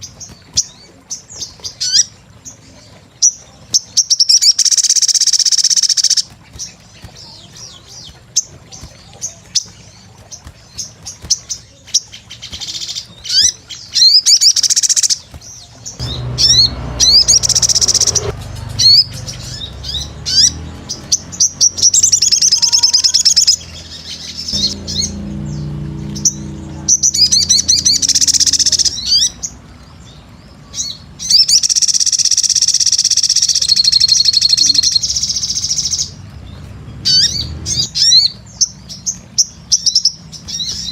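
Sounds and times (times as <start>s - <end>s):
sunbird twittering song: 0.0s - 40.9s
low hum: 15.4s - 31.2s.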